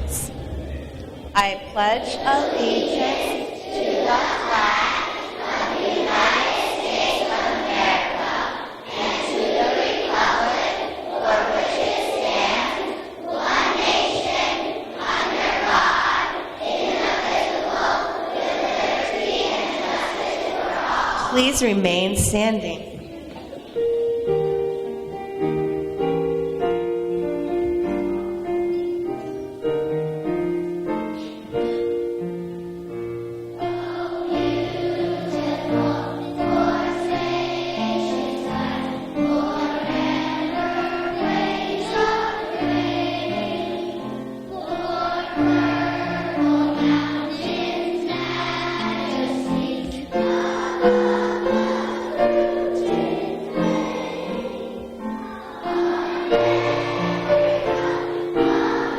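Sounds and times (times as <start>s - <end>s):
piano: 0.0s - 58.9s
children singing: 2.0s - 21.5s, 33.6s - 58.9s.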